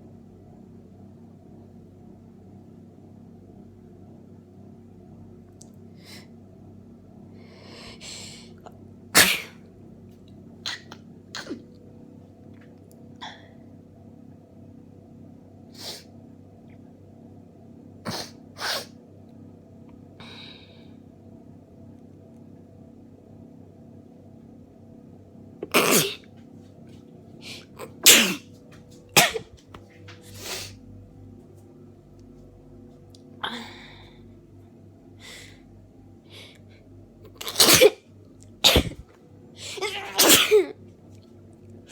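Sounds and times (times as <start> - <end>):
person sneezing: 9.2 - 9.6, 18.1 - 18.9, 25.7 - 26.2, 27.5 - 28.4, 29.2 - 29.6, 37.4 - 38.0, 38.6 - 39.0, 39.6 - 40.7
breathy in-breath: 20.2 - 21.0, 33.4 - 34.4.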